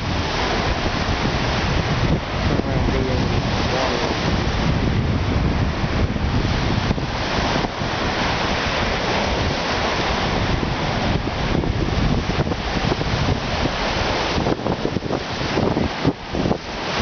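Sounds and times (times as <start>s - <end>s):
waves breaking on beach: 0.0s - 17.0s
wind buffeting microphone: 0.0s - 17.0s.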